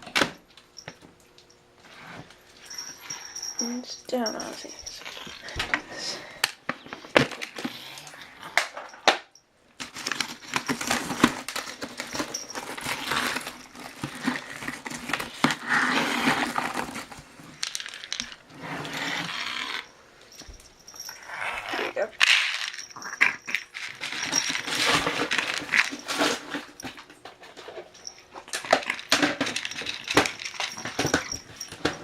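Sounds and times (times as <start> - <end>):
dog crunching and chewing food: 9.8 - 32.0.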